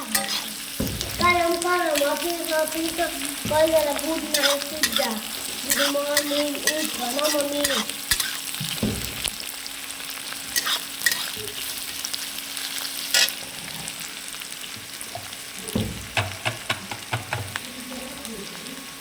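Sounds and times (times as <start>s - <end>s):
vegetables sizzling in a pan: 0.0s - 19.0s
spoon knocking against pan: 0.2s - 2.1s, 3.4s - 5.0s, 8.1s - 9.3s, 15.2s - 17.6s.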